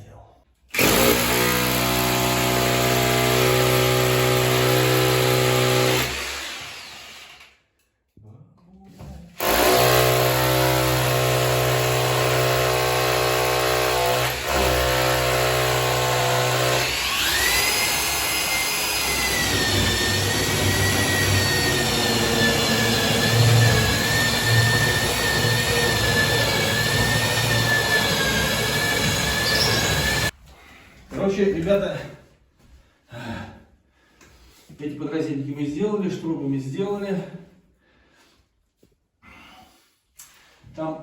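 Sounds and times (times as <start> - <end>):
wall chaser cutting plaster: 0.7 - 7.6, 9.3 - 30.4.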